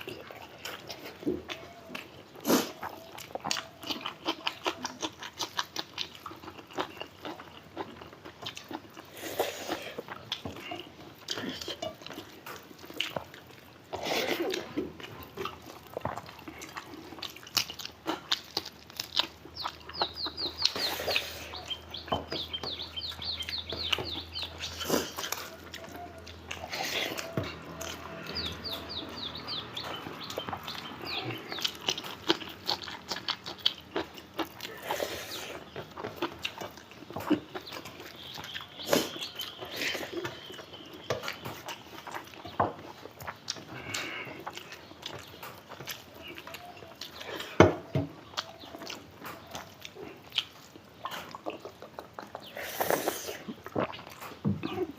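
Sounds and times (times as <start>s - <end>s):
chewing and lip smacking: 0.0s - 54.9s
bird chirping: 15.4s - 54.9s.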